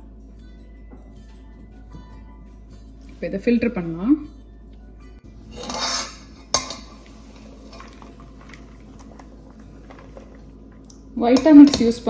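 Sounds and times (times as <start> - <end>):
sharp kitchenware clink: 5.5 - 7.0.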